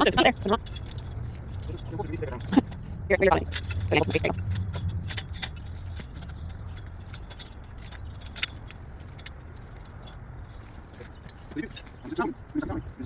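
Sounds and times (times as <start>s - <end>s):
metal hardware clinking: 0.0s - 12.7s
steady low rumble: 0.0s - 13.0s.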